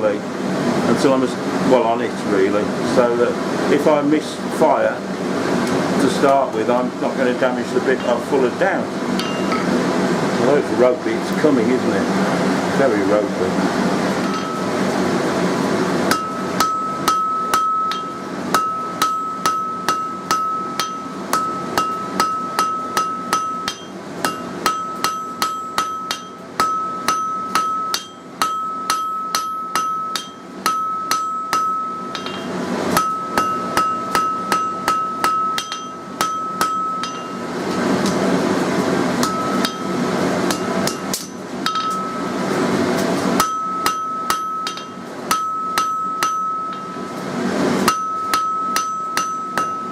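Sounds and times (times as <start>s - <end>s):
anvil ringing: 9.2s - 9.7s, 14.3s - 14.7s, 16.1s - 37.5s, 39.2s - 42.4s, 43.4s - 47.0s, 47.9s - 49.9s
hammer striking steel on anvil: 9.2s - 9.7s, 14.2s - 14.7s, 16.1s - 38.2s, 39.2s - 42.4s, 43.4s - 47.1s, 47.8s - 49.9s.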